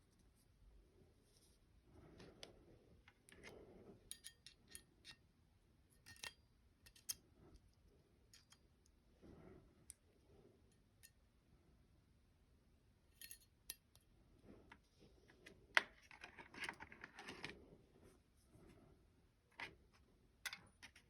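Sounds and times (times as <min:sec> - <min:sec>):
pistol parts clicking and clinking: 0:04.1 - 0:05.2, 0:06.0 - 0:07.2, 0:13.2 - 0:14.0.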